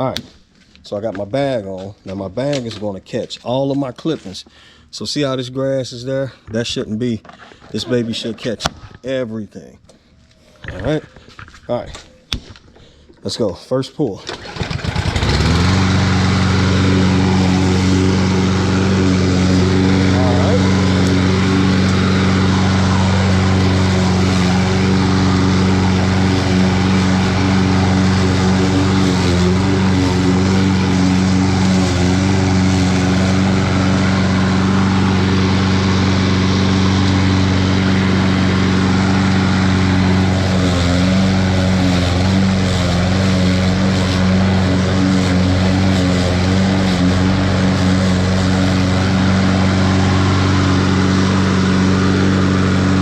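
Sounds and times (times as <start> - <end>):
lawn mower running: 14.2 - 53.0.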